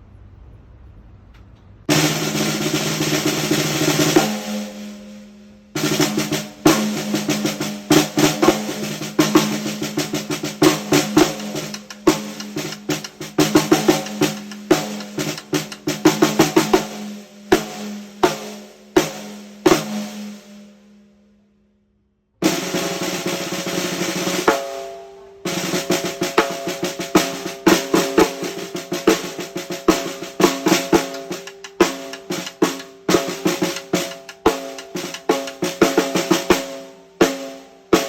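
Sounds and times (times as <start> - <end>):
snare drum roll and strokes: 1.9 - 5.2, 5.8 - 20.6, 22.4 - 24.8, 25.5 - 38.0.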